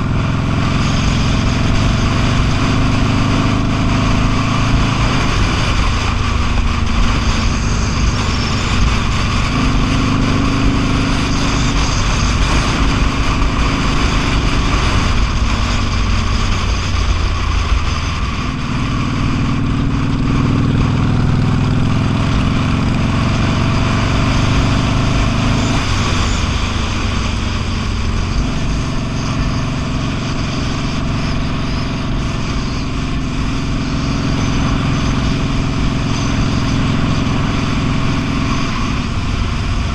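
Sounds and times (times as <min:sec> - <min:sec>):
motorcycle engine running: 0:00.0 - 0:39.9
wind and road noise: 0:00.0 - 0:39.9.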